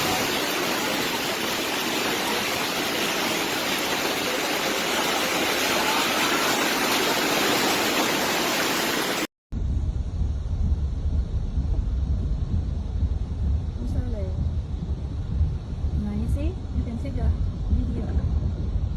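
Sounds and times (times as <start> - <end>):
heavy water rushing: 0.0 - 9.3.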